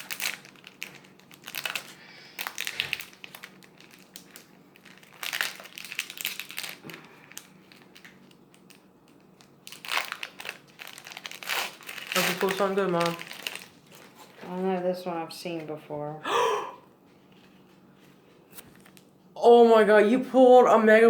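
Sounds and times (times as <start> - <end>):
foil wrapper crinkling: 0.0 - 14.9.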